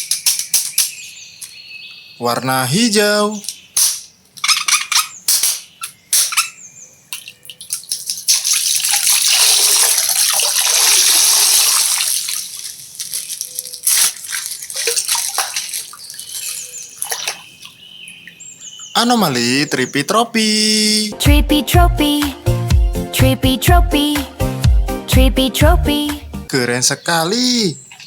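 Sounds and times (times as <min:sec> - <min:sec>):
water pouring and splashing: 0:07.1 - 0:18.4
plastic bag crinkling and tearing: 0:07.8 - 0:16.9.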